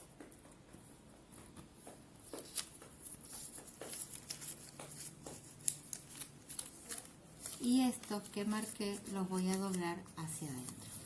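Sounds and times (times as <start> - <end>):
paper crinkling: 1.4 - 11.0
paper crackle: 2.3 - 11.0.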